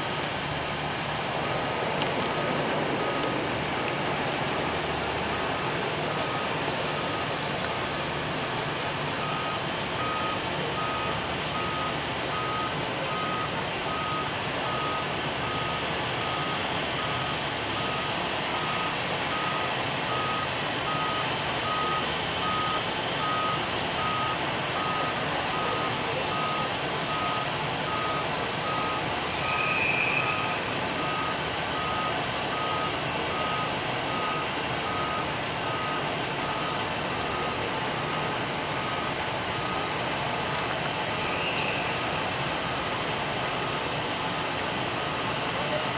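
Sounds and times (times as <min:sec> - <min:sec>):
machinery roar: 0:00.0 - 0:18.2
reversing alarm beeping: 0:00.0 - 0:45.9.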